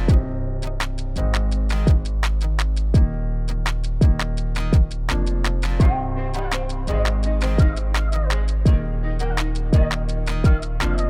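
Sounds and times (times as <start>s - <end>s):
deep kick drum: 0.0s - 0.4s, 1.2s - 2.2s, 2.9s - 3.3s, 4.0s - 6.1s, 6.9s - 8.0s, 8.6s - 9.0s, 9.7s - 11.0s
held bass and synth notes: 0.0s - 11.0s
hi-hat ticks: 9.4s - 11.0s.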